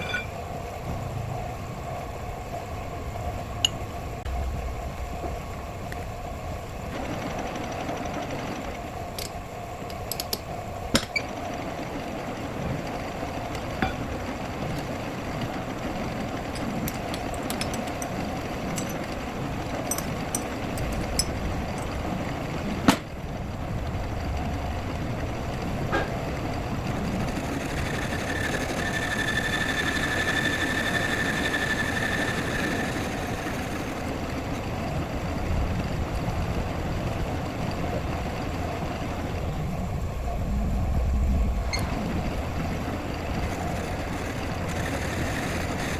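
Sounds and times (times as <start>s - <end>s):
high whine: 0.0s - 9.4s, 10.9s - 23.3s, 26.7s - 34.3s
machine running: 3.4s - 45.9s.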